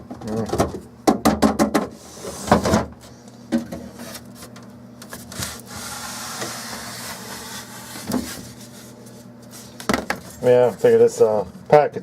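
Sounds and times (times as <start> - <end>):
knock on plastic: 0.5 - 1.9
plastic sliding rub: 5.3 - 9.8.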